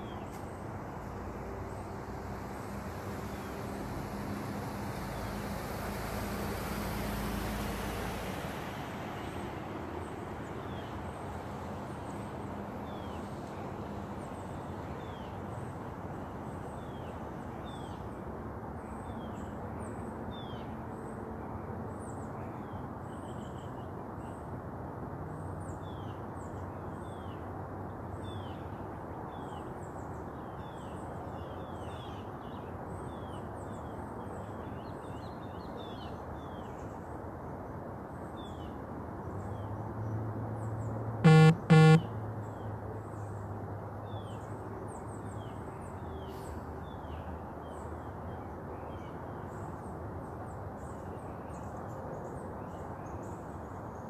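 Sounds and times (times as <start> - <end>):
car horn honks: 41.2 - 42.1.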